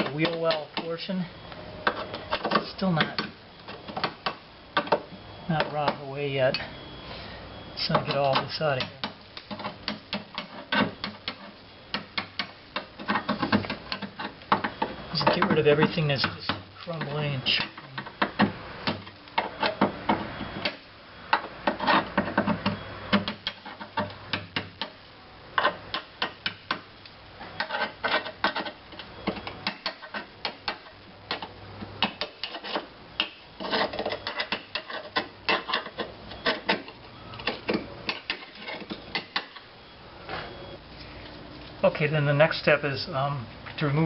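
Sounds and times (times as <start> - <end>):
tool scraping metal: 21.4 - 24.9, 27.4 - 39.7
hand tool chipping rusted steel: 25.6 - 26.9, 27.6 - 39.6.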